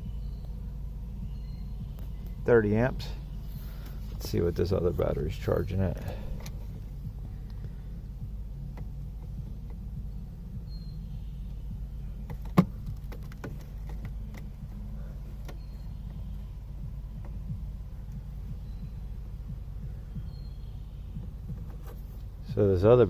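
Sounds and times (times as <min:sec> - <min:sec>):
light clicks and knocks: 0:12.2 - 0:16.2.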